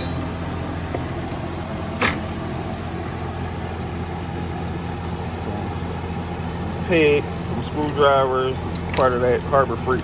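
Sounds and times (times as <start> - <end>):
metallic clack of hand tools: 0.0 - 0.3
low mechanical hum: 0.0 - 10.0.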